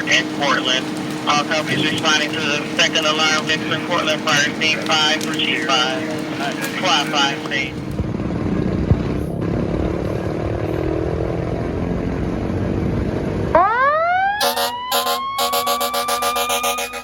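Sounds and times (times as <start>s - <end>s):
fire truck engine running: 0.0s - 17.0s
mechanical siren rising: 13.4s - 17.0s
air horn blasts: 14.4s - 17.0s.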